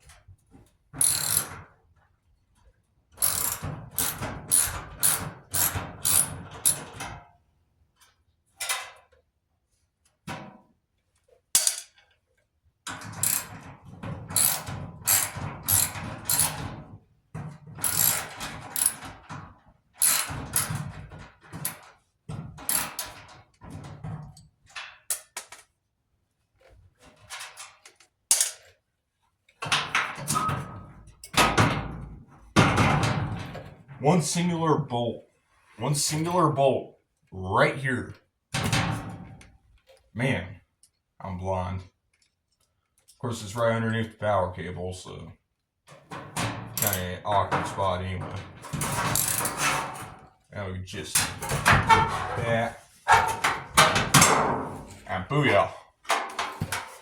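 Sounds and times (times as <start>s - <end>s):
ratchet wrench clicking: 1.0s - 1.5s, 3.2s - 6.8s, 13.2s - 13.5s, 14.4s - 16.5s, 17.8s - 19.0s, 20.0s - 20.7s.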